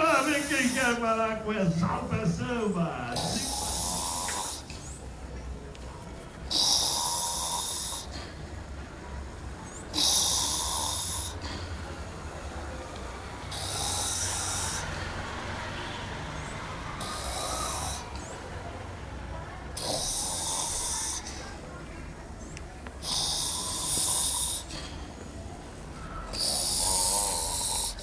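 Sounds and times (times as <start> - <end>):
man snoring: 3.1 - 4.6, 6.5 - 8.1, 13.5 - 14.8, 26.4 - 28.0.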